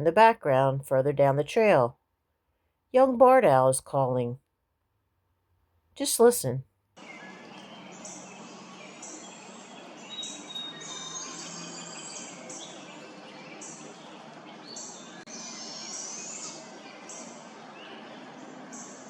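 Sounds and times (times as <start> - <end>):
owls giving raspy begging calls: 15.3 - 16.6.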